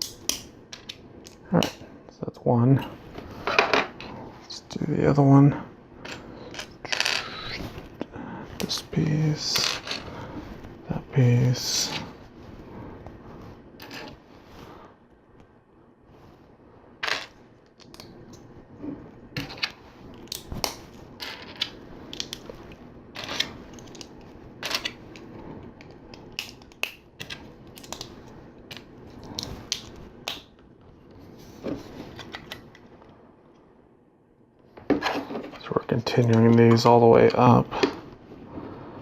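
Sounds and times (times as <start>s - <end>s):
plastic pieces clicking and snapping: 19.4s - 22.5s, 23.2s - 30.6s.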